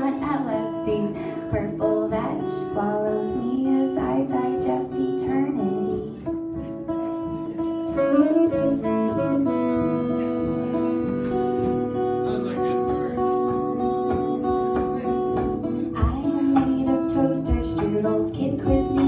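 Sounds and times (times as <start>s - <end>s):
acoustic guitar strumming: 0.0s - 19.0s
long held notes: 5.9s - 19.0s.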